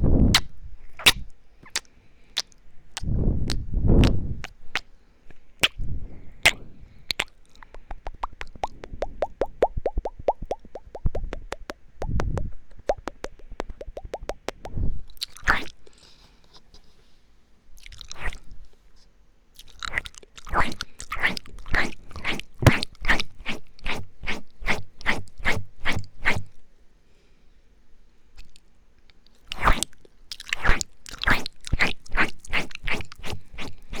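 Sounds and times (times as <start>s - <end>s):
tongue clicks: 0.3s - 5.8s, 6.4s - 15.8s, 19.6s - 24.4s, 28.4s - 34.0s
wet mouth smacking: 0.3s - 5.8s, 6.4s - 15.9s, 17.8s - 18.6s, 19.6s - 26.5s, 28.4s - 34.0s.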